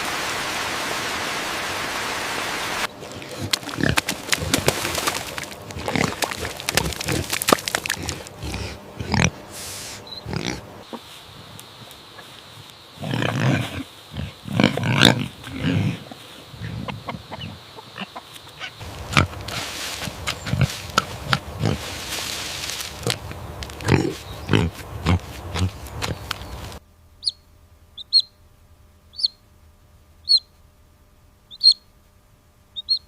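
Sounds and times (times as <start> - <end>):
pig grunting: 3.0 - 9.4, 10.2 - 10.8, 13.0 - 19.6, 20.4 - 22.0, 23.0 - 26.2
sharp clicking noises: 3.5 - 8.4, 25.5 - 26.8.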